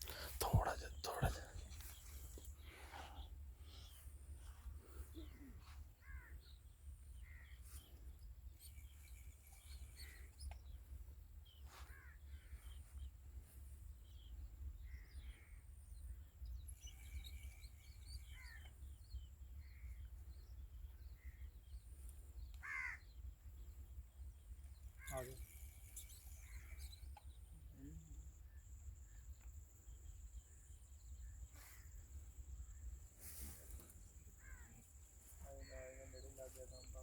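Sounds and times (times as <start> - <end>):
bird calls: 0.0 - 13.1, 14.1 - 37.0
harsh caws: 22.6 - 23.1.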